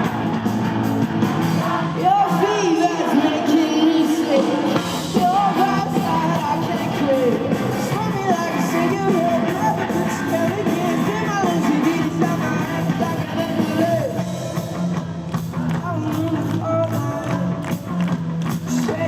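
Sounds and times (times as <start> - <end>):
pop-rock band playing: 0.0 - 19.0
person singing: 1.5 - 14.8, 15.7 - 17.9, 18.6 - 19.0.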